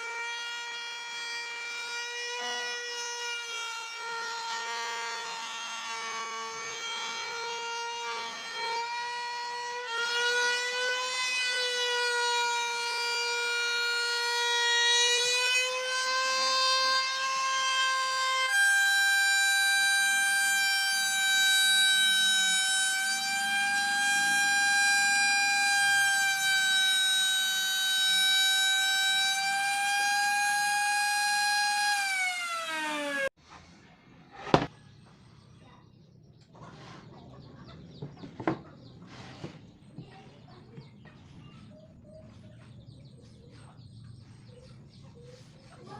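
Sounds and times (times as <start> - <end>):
circular saw motor whine: 0.0 - 33.4.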